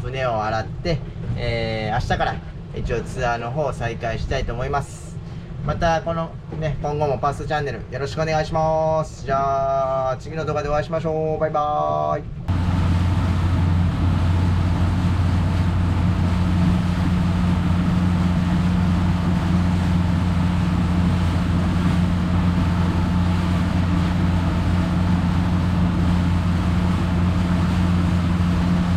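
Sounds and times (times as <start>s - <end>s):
wind: 0.0s - 28.9s
boat engine running: 12.3s - 28.9s
water noise: 12.4s - 28.9s.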